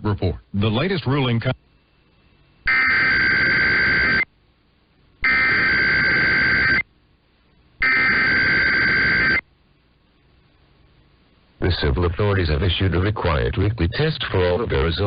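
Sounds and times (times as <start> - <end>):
raspy digital data bursts: 2.6 - 4.3, 5.2 - 6.8, 7.8 - 9.4.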